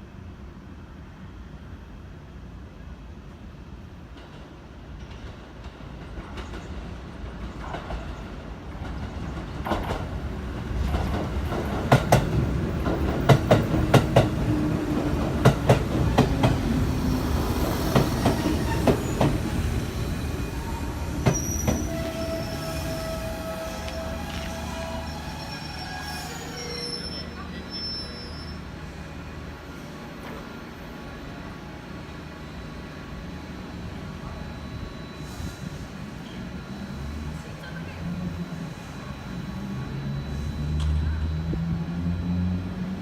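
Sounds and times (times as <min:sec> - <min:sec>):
electric train running past: 0:00.1 - 0:43.0
thin wheel squeal: 0:18.2 - 0:28.7.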